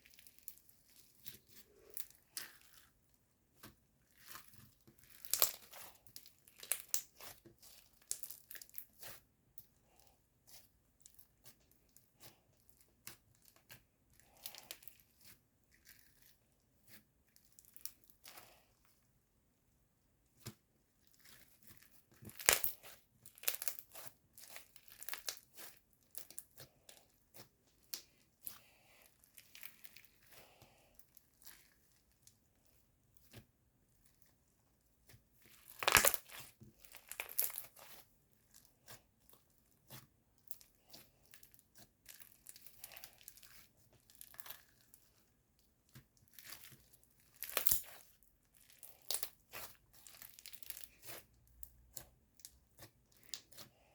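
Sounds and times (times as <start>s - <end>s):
slime crackling and popping: 4.1s - 9.2s, 21.2s - 28.2s, 35.1s - 45.1s, 45.8s - 53.7s.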